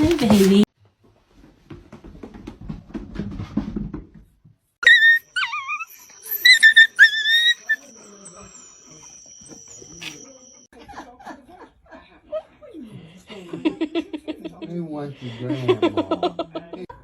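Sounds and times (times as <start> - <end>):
dog whining: 4.8 - 10.6.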